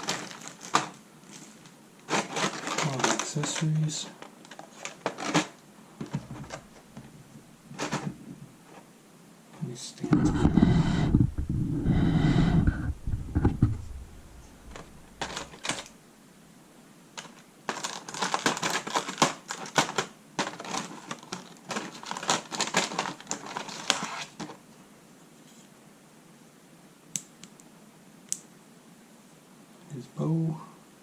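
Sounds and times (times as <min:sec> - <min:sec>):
plastic parts clicking and rattling: 0:00.0 - 0:07.1, 0:07.8 - 0:08.2, 0:14.6 - 0:15.9, 0:17.2 - 0:24.6.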